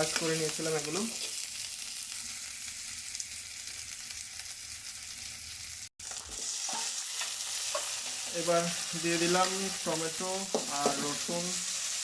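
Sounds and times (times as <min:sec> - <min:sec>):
onions sizzling in oil: 0:00.0 - 0:12.0.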